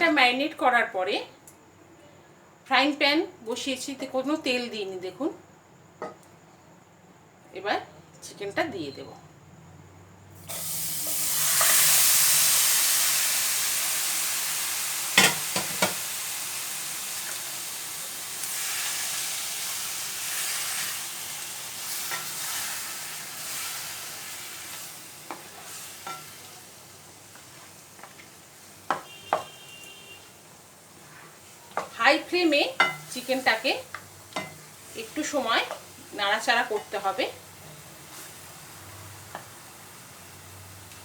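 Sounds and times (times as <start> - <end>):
chicken sizzling in a pan: 10.4 - 41.0.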